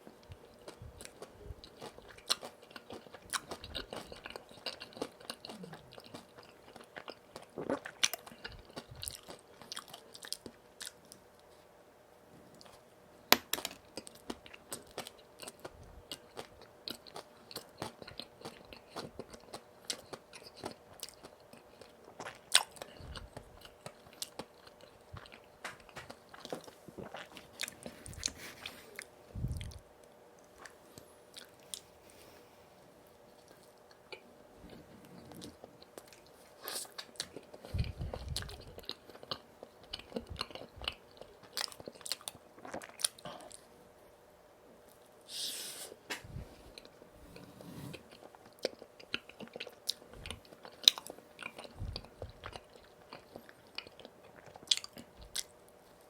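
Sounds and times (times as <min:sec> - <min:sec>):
faint steady hum: 0:00.0 - 0:56.0
biting and chewing crunchy food: 0:00.2 - 0:11.6, 0:13.4 - 0:29.8, 0:33.2 - 0:43.6, 0:48.0 - 0:56.0.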